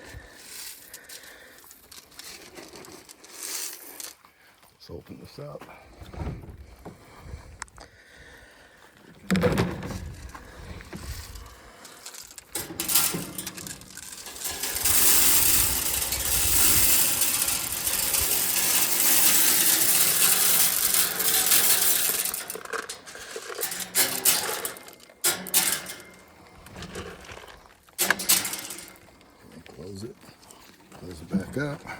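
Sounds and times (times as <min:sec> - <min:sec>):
dry feed pouring: 0:11.3 - 0:25.6
metal trap clanking: 0:12.5 - 0:26.2, 0:28.0 - 0:29.0.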